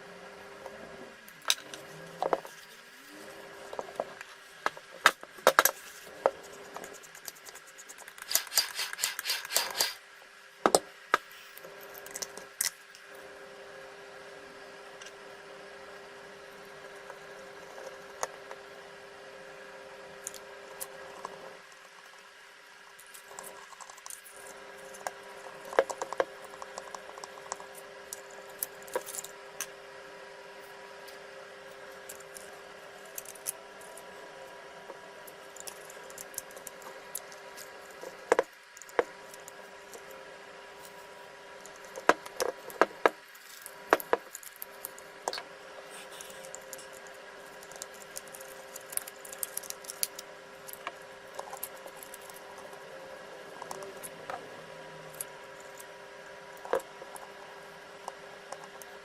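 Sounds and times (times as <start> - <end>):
faint electrical hum: 0.0 - 59.0.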